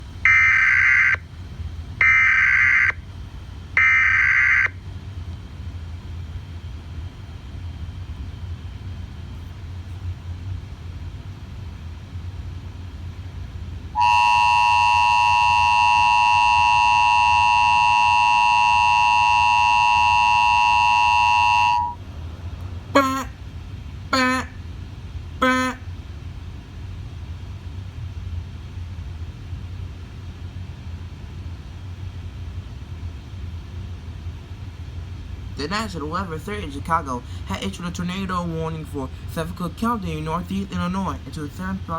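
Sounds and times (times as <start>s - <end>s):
low hum: 3.0s - 41.9s
steady two-tone alert signal: 14.0s - 22.0s, 23.0s - 23.3s, 24.2s - 24.5s, 25.4s - 25.8s.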